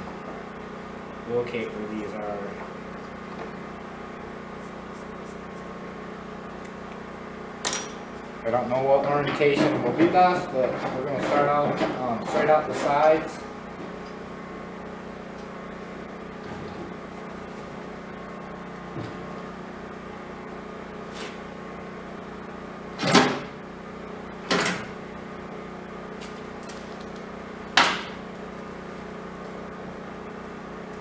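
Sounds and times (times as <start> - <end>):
steady low hum: 0.0 - 22.8.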